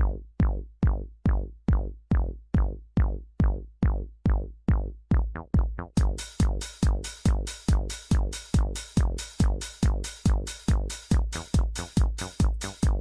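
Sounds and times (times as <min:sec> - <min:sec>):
drum machine beat: 0:05.1 - 0:13.0.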